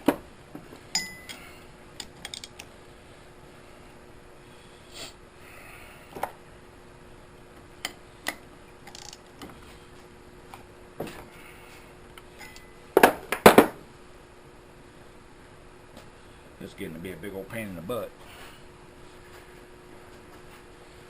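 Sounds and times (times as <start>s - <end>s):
metal tool clinks and knocks: 0.9s - 1.4s.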